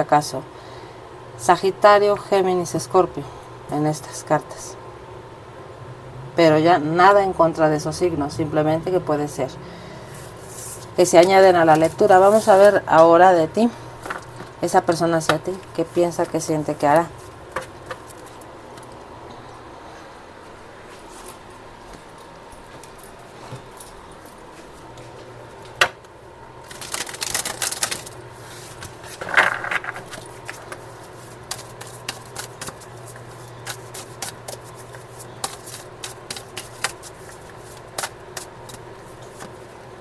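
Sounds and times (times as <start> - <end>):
cards being shuffled: 26.7 - 39.6.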